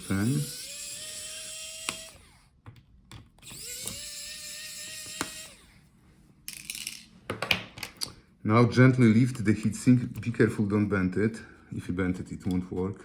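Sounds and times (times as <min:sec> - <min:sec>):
electric screwdriver spinning: 0:00.0 - 0:02.4, 0:03.4 - 0:05.8
small parts clicking and rattling: 0:06.5 - 0:07.1.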